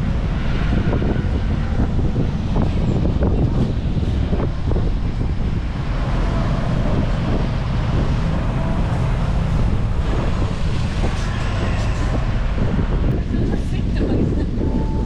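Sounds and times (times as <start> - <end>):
steady low rumble: 0.0 - 15.0
wind buffeting microphone: 0.0 - 15.0.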